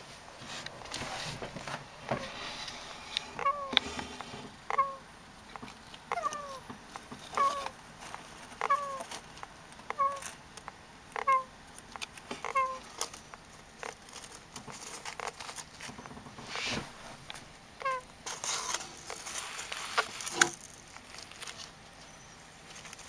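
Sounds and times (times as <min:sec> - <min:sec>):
soft rustle: 0:00.0 - 0:04.6, 0:05.8 - 0:10.4, 0:12.8 - 0:17.5, 0:18.2 - 0:23.0
hamster snoring squeaks: 0:02.2 - 0:05.0.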